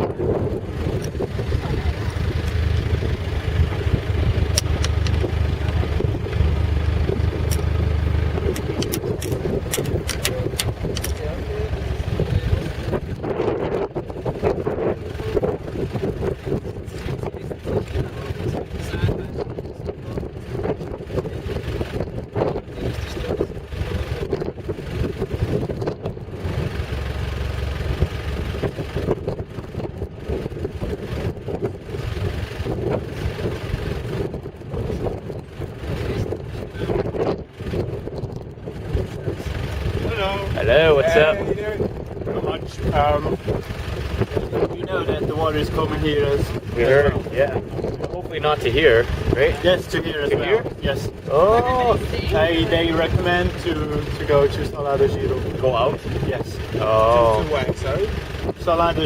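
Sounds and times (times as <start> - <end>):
car engine humming: 0.0 - 59.0
low rough vehicle rumble: 0.0 - 59.0
wind buffeting microphone: 0.0 - 59.0
rattling clicks: 4.5 - 5.4, 8.5 - 11.3.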